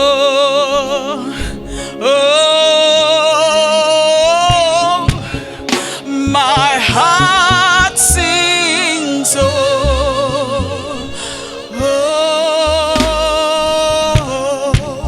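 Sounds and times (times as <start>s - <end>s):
person singing with vibrato: 0.0s - 15.0s
low bass notes: 4.3s - 15.0s
soft percussion hits: 4.5s - 7.6s, 14.1s - 15.0s.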